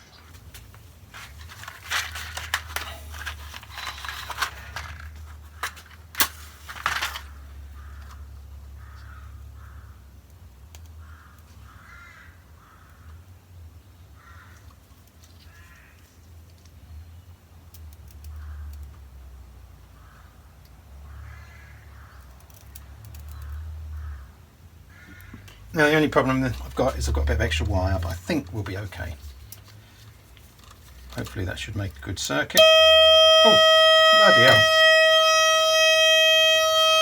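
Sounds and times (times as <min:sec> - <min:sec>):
handling clicks and rustling: 0:00.0 - 0:08.2, 0:25.4 - 0:37.0
crow cawing: 0:07.8 - 0:08.2, 0:08.8 - 0:10.0, 0:11.0 - 0:13.1, 0:14.2 - 0:14.6, 0:21.1 - 0:22.2, 0:24.9 - 0:25.5.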